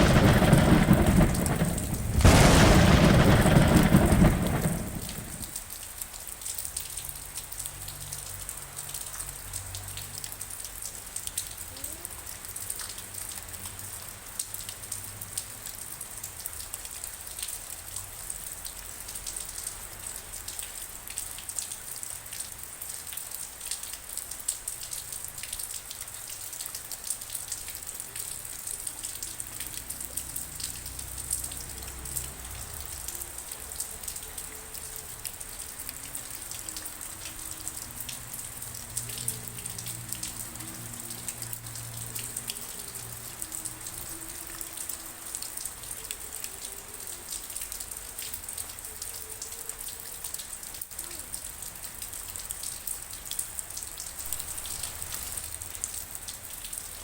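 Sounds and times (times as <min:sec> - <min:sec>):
raindrops ticking on hard surfaces: 0:00.0 - 0:57.0
steady rain: 0:00.0 - 0:57.0.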